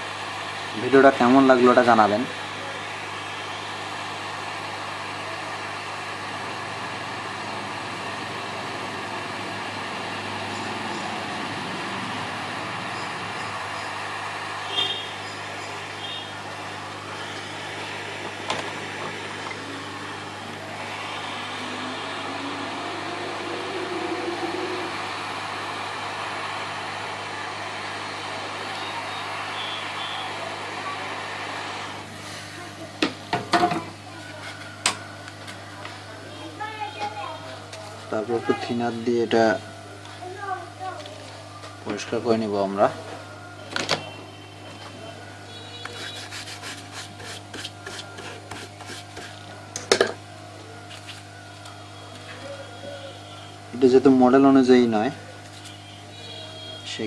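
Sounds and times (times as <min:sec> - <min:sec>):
hot air gun blowing: 0:06.7 - 0:32.5
rubbing strokes scrubbing chip: 0:45.9 - 0:49.4
sharp scrape: 0:45.9 - 0:49.4.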